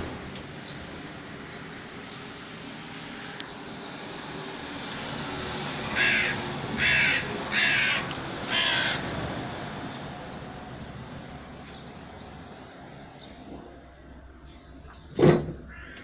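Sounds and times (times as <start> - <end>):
rushing background noise: 0.0 - 14.8
crow cawing: 5.9 - 9.1, 15.7 - 16.0.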